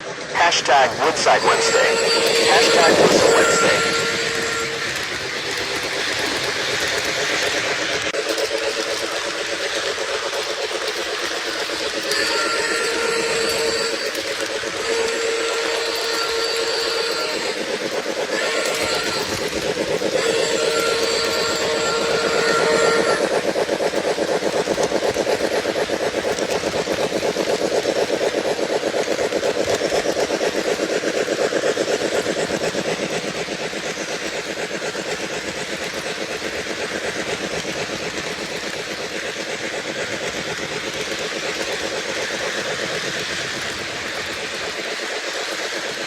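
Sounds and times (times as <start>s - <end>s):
steam chuffing: 0.0s - 46.0s
model train steam whistle: 0.4s - 7.0s, 11.8s - 23.5s.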